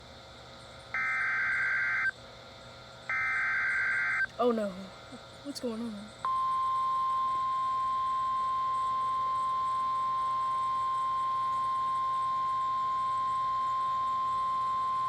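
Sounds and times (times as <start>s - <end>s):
steady alarm tone: 1.0s - 2.1s, 3.1s - 4.3s, 6.3s - 15.0s.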